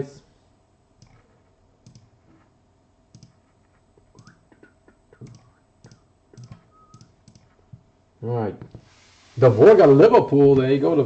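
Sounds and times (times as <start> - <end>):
mouse and keyboard clicks: 1.0 - 2.1, 3.1 - 7.8.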